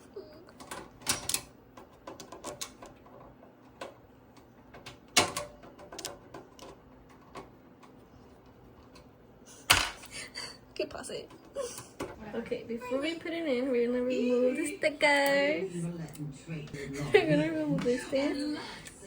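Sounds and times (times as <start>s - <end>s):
computer parts clicking and knocking: 0.6s - 8.0s.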